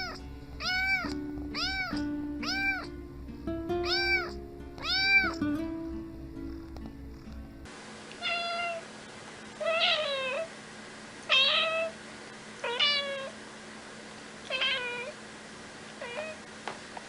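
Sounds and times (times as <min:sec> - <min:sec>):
cat meowing: 0:00.0 - 0:03.0, 0:03.8 - 0:05.5, 0:08.2 - 0:08.8, 0:09.6 - 0:10.5, 0:11.3 - 0:12.0, 0:12.6 - 0:13.4, 0:14.5 - 0:15.2, 0:16.0 - 0:16.4.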